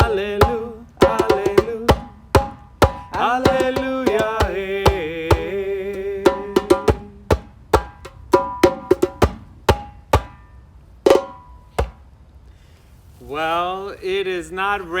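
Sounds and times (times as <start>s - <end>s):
percussion strikes: 0.0s - 5.5s, 6.2s - 12.0s
choir singing worship song: 3.1s - 6.6s.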